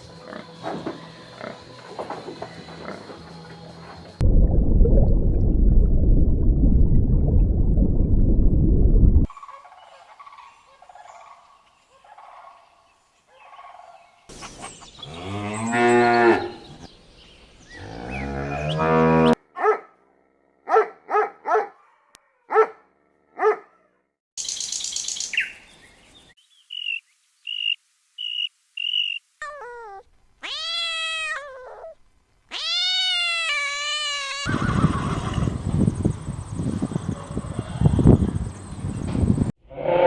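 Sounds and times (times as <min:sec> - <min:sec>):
cow mooing: 0:17.9 - 0:19.4.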